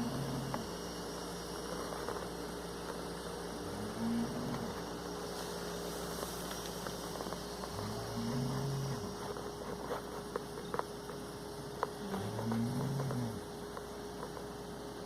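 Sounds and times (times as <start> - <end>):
person snoring: 0.0 - 0.6, 3.6 - 4.8, 7.7 - 9.1, 12.0 - 13.4
electrical hum: 0.0 - 15.0.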